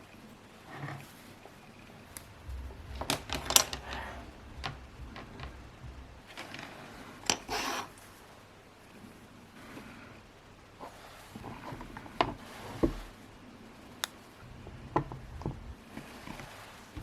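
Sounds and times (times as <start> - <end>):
low rumble: 2.0 - 7.6, 14.4 - 16.2.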